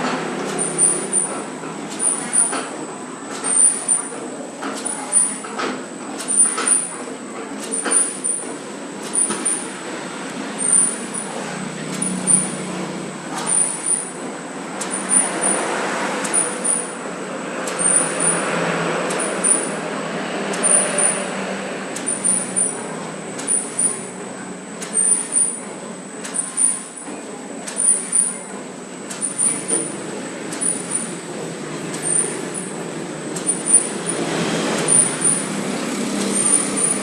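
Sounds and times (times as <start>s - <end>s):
machine humming: 0.0s - 37.0s
machine knocks: 10.6s - 14.2s.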